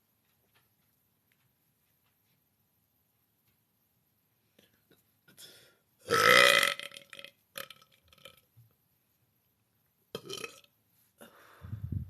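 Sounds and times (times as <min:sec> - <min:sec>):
person burping: 0:06.1 - 0:08.4, 0:10.2 - 0:10.7.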